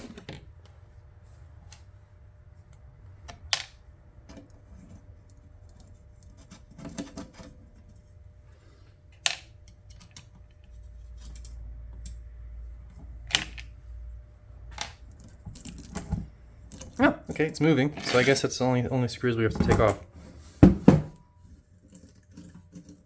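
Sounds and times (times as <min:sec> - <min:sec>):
tools handled on workbench: 0:15.6 - 0:18.5.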